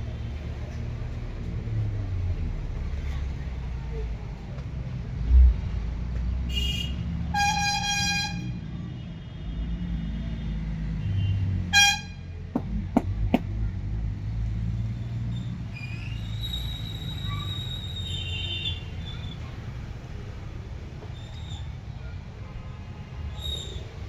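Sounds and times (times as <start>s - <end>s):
low traffic rumble: 0.0s - 24.0s
vehicle horns honking: 6.5s - 8.5s, 11.0s - 12.2s.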